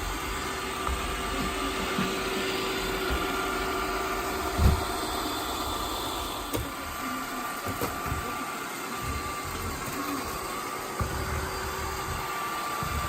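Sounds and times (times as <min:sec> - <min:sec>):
robot vacuum cleaner whirring: 0:00.0 - 0:13.0
thump: 0:04.5 - 0:05.0.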